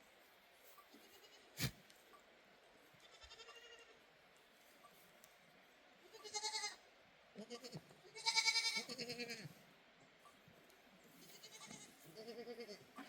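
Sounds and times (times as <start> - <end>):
goats bleating: 3.0 - 4.0, 6.1 - 6.8, 7.4 - 9.6, 11.2 - 13.0.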